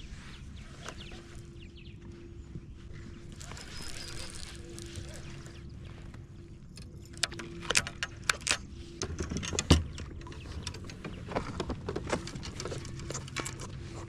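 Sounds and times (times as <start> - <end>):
fishing gear clicking and rattling: 3.2 - 14.0.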